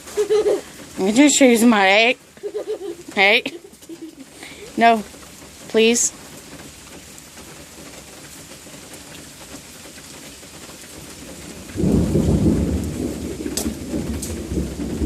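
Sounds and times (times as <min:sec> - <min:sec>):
rain hiss: 0:00.0 - 0:15.0
thunder rumbling: 0:11.1 - 0:15.0.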